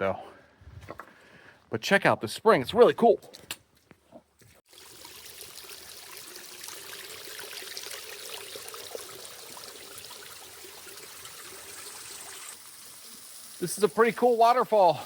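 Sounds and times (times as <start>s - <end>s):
water splashes and drips: 4.5s - 15.0s
water running: 4.6s - 15.0s.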